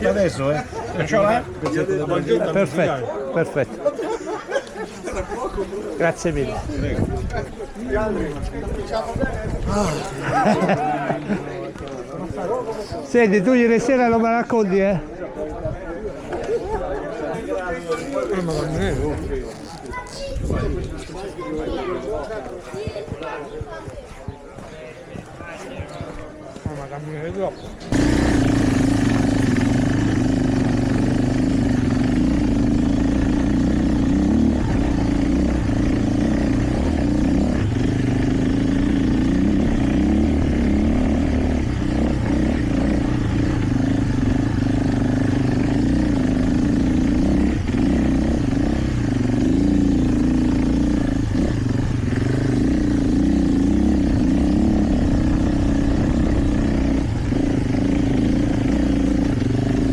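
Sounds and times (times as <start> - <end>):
motorcycle engine running: 27.9 - 59.9.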